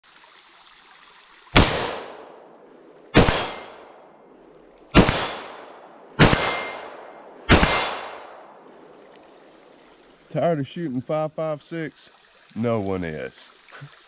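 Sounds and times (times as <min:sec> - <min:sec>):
rifle shots: 0:01.6 - 0:02.4, 0:03.2 - 0:04.0, 0:04.9 - 0:08.6.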